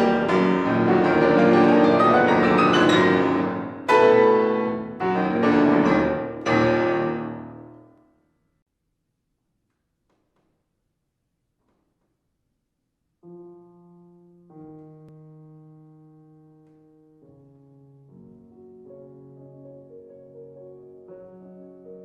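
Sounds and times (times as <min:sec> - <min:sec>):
solo piano: 0:00.0 - 0:08.0, 0:13.2 - 0:22.0.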